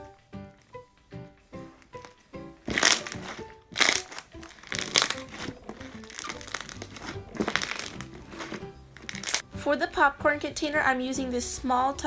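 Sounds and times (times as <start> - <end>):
background music: 0.0 - 12.0
slime crackling and popping: 1.8 - 9.4.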